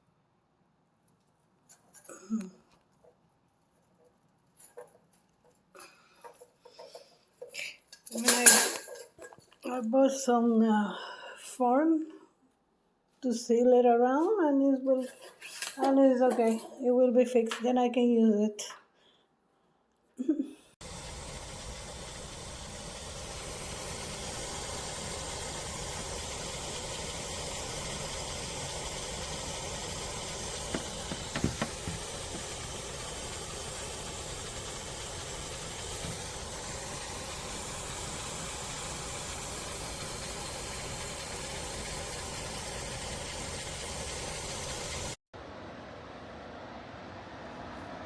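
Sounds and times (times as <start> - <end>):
air conditioner fan hissing: 20.8 - 48.0
small knocks: 30.7 - 32.0.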